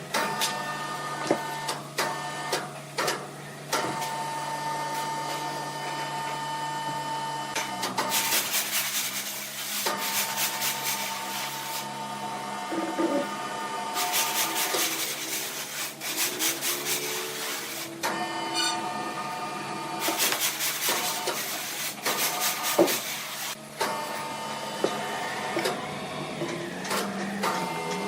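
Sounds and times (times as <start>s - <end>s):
saw cutting through wood: 8.0s - 28.0s
steady machine whine: 16.9s - 20.0s, 23.5s - 28.0s.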